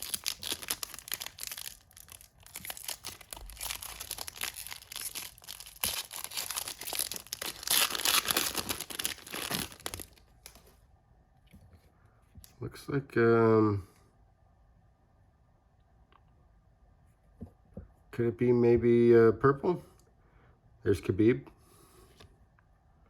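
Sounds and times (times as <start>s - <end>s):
plastic foil wrapper crinkling: 0.0s - 10.7s.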